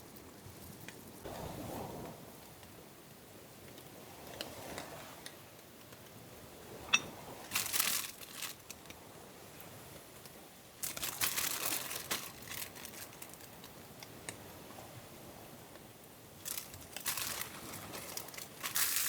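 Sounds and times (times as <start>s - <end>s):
wrapper crinkling: 7.5s - 8.9s, 10.8s - 13.8s, 16.4s - 19.0s.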